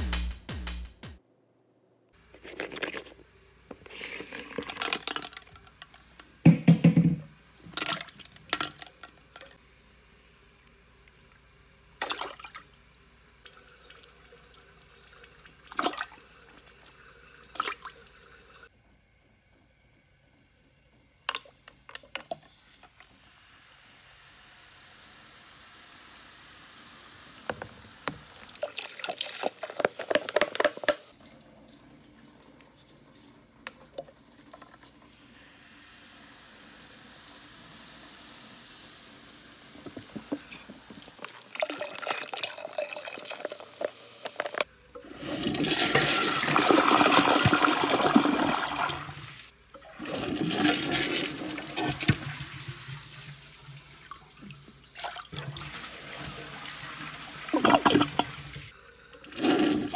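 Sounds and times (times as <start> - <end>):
toilet flushing water rush: 23.9 - 59.9.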